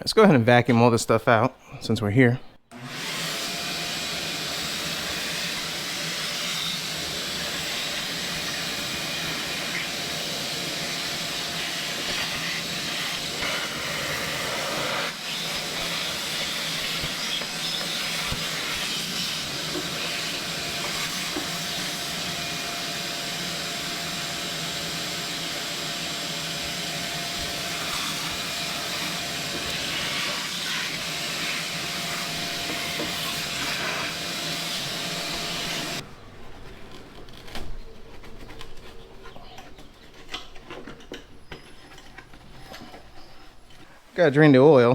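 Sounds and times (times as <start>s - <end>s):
vacuum cleaner whining: 2.7s - 44.1s.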